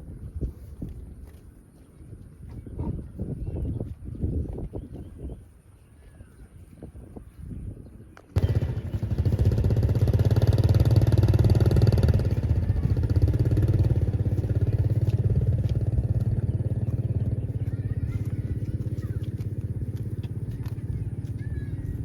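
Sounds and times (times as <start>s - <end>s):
vehicle engine running: 8.4s - 22.0s.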